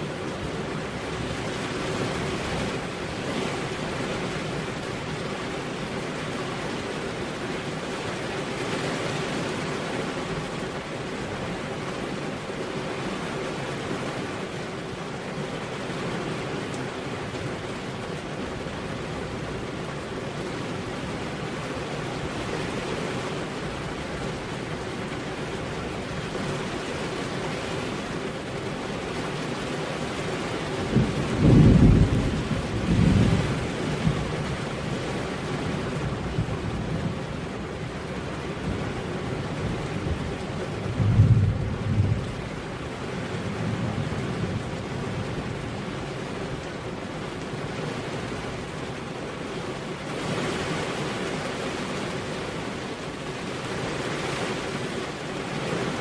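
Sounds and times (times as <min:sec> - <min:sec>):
heavy rain on a road: 0:00.0 - 0:56.0
deep thunder rumbles: 0:30.8 - 0:35.1, 0:38.6 - 0:45.8.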